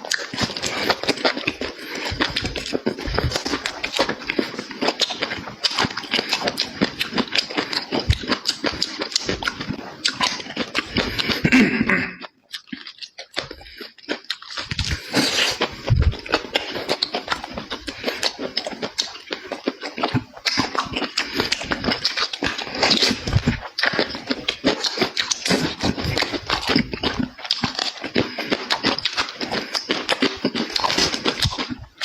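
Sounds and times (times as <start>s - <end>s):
chewing and lip-smacking: 0.0s - 32.0s.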